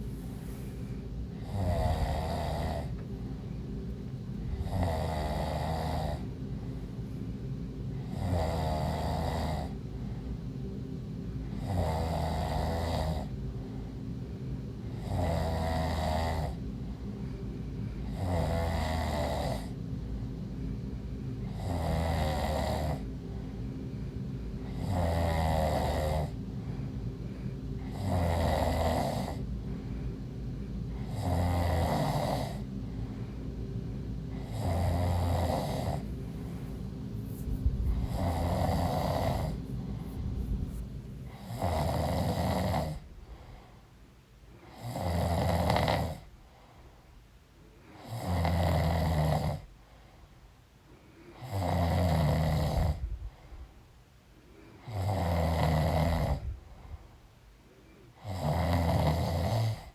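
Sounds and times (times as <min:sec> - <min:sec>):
low background hum: 0:00.0 - 0:59.9
woman snoring: 0:01.3 - 0:03.0, 0:04.4 - 0:06.3, 0:07.9 - 0:09.8, 0:11.4 - 0:13.4, 0:14.9 - 0:16.6, 0:18.0 - 0:19.8, 0:21.4 - 0:23.1, 0:24.6 - 0:26.4, 0:27.8 - 0:29.5, 0:30.9 - 0:32.7, 0:34.3 - 0:43.1, 0:44.6 - 0:46.3, 0:48.0 - 0:49.7, 0:51.4 - 0:53.2, 0:54.8 - 0:56.6, 0:58.2 - 0:59.9.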